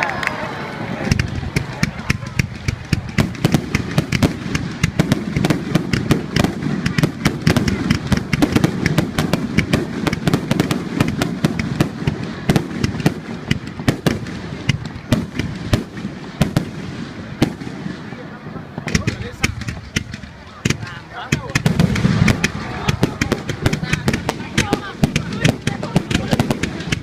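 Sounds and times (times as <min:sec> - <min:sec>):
fireworks bangs and crackles: 0:00.0 - 0:27.0.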